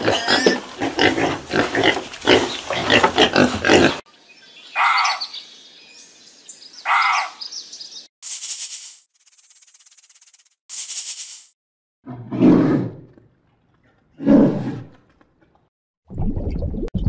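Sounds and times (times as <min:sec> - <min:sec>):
animal grunting: 0:00.0 - 0:04.0.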